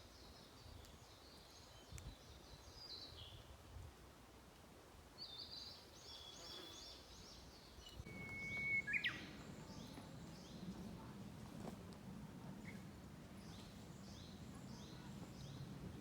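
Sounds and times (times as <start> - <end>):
whistled bird call sweeping upward: 7.8 - 9.4
faint high bird notes: 7.8 - 10.9.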